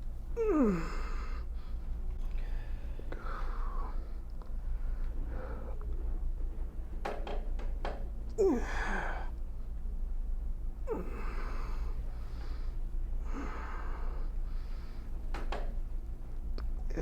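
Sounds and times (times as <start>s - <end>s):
low hum: 0.0s - 17.0s
person sighing: 0.4s - 1.4s, 8.4s - 9.3s, 10.9s - 11.9s.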